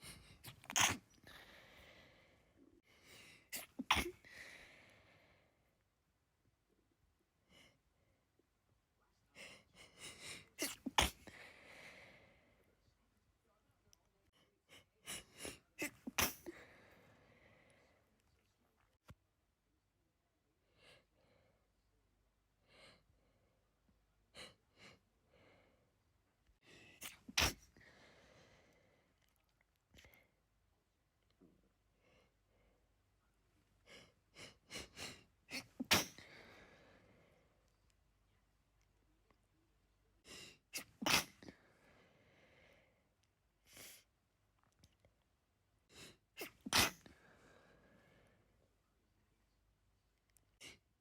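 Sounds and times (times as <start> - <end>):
woman sneezing: 0.4 - 1.2, 3.5 - 4.2, 10.6 - 11.3, 15.4 - 16.6, 27.0 - 27.7, 35.5 - 36.3, 40.8 - 41.5, 46.4 - 47.1.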